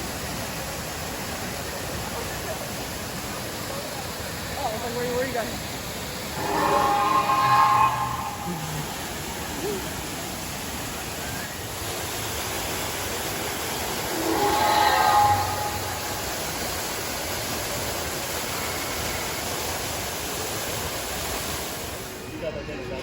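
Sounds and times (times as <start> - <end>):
steady rushing noise: 5.9 - 9.6, 13.0 - 17.4
indistinct voice: 6.3 - 9.2.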